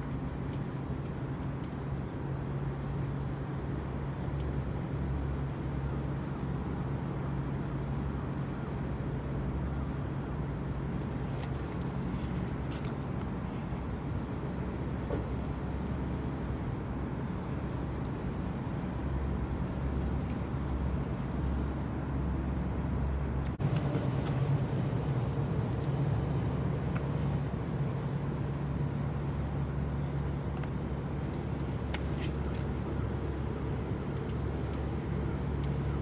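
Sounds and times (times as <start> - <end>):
outdoor background noise: 0.0 - 36.0
engines humming: 10.8 - 36.0.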